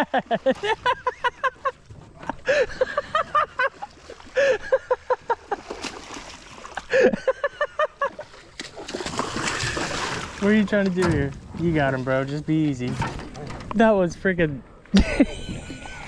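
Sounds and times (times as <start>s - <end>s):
man laughing excitedly: 0.0s - 5.7s, 6.8s - 8.2s, 14.9s - 16.0s.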